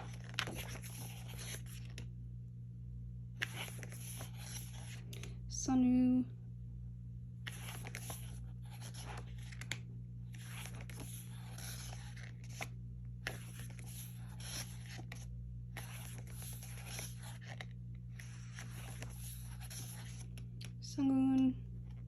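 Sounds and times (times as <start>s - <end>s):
paper pages rustling and sliding: 0.0s - 2.1s, 3.4s - 5.3s, 7.4s - 20.5s
steady low hum: 0.0s - 22.0s.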